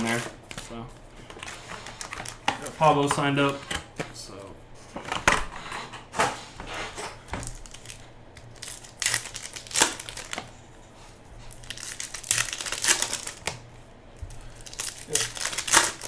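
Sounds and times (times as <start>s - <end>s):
plastic packaging crinkling: 0.0s - 3.6s, 7.4s - 10.8s, 11.5s - 13.7s, 14.4s - 16.0s.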